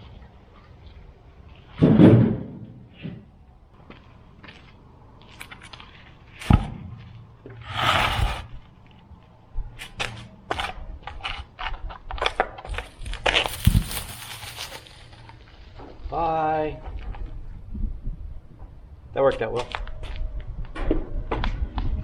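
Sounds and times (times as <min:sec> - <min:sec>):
heavy thump of log: 0:01.8 - 0:03.2, 0:06.5 - 0:07.0
rustling scrape: 0:07.6 - 0:08.7, 0:12.7 - 0:15.8.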